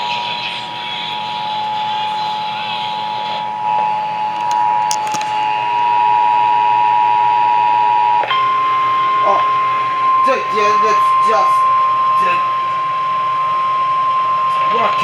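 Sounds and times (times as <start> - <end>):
broadcast hiss: 0.5 - 5.8.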